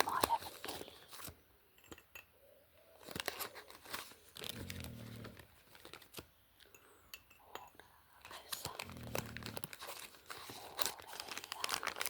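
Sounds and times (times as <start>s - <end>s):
packaging crinkling and tearing: 0.0s - 1.4s, 3.0s - 6.3s, 8.2s - 12.0s.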